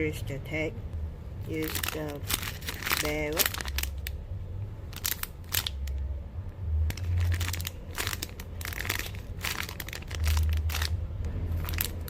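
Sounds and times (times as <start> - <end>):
squishy toy clicks and crinkles: 1.5 - 4.2, 4.9 - 6.0, 6.8 - 12.0.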